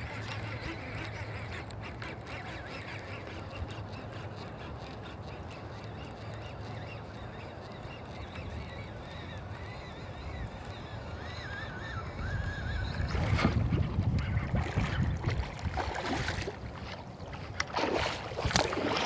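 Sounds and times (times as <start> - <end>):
wind rumbling on microphone: 8.5 - 19.0.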